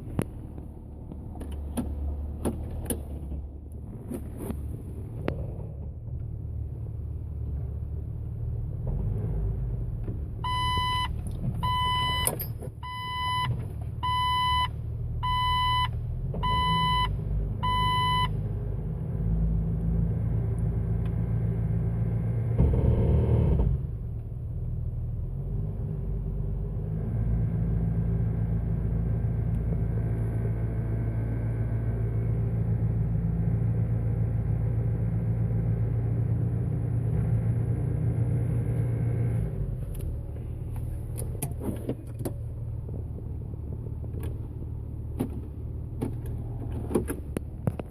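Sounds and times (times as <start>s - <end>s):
car engine running: 0.0s - 9.0s
car warning chime beeping: 10.4s - 18.3s.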